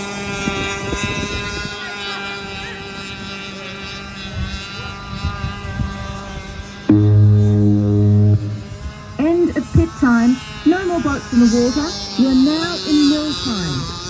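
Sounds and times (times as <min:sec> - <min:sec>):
model boat engines whining: 0:00.0 - 0:14.0.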